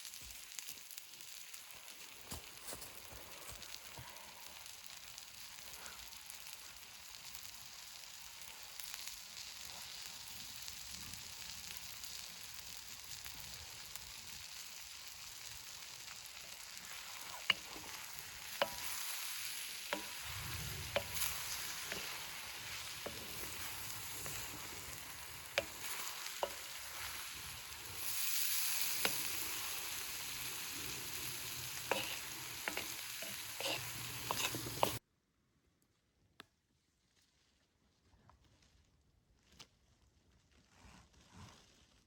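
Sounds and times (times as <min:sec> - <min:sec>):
chicken sizzling in a pan: 0:00.0 - 0:35.0
utensil clicking against pan: 0:17.0 - 0:29.9, 0:31.2 - 0:35.0.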